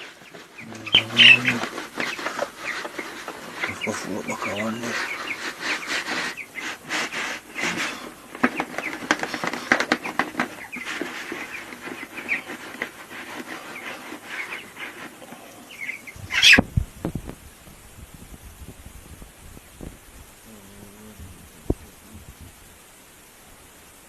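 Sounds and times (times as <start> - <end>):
chicks peeping: 0.0 - 17.3
loud sharp chicken call: 0.6 - 3.7, 15.7 - 16.6.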